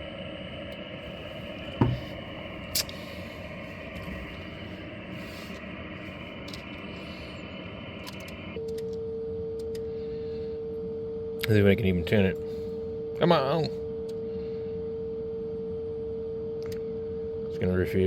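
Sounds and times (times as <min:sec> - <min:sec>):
radio static hiss: 0:00.9 - 0:08.6.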